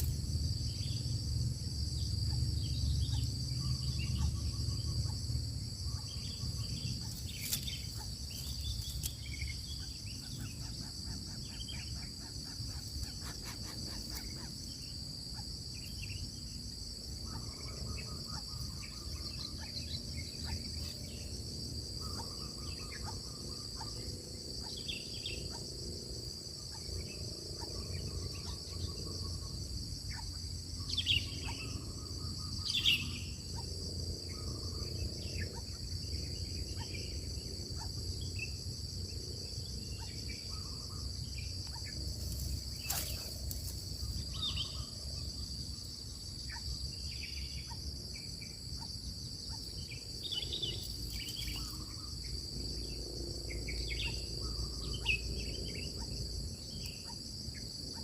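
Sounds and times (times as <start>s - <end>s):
high-pitched insect trill: 0.0s - 58.0s
bird chirps: 39.9s - 45.0s.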